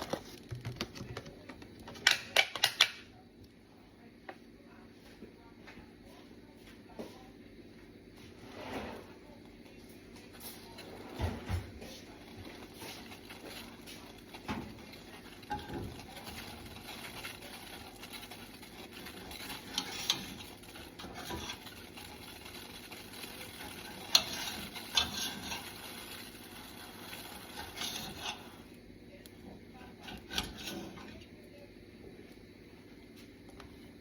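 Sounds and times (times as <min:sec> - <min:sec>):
kitchen utensils clicking and scraping: 0:10.3 - 0:31.4.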